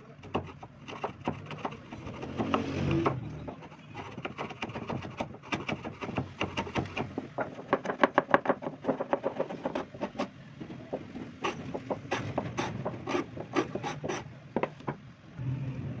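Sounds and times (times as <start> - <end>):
hand rubbing on wood: 8.6 - 14.8.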